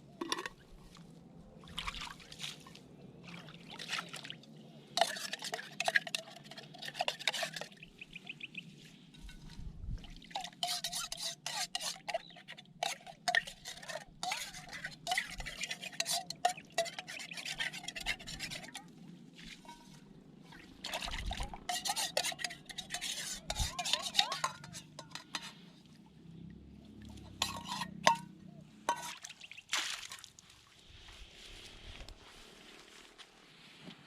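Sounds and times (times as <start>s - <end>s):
cookware rubbing and scraping: 5.0s - 8.0s, 10.4s - 18.8s, 20.8s - 25.7s, 27.2s - 28.2s, 28.9s - 29.2s.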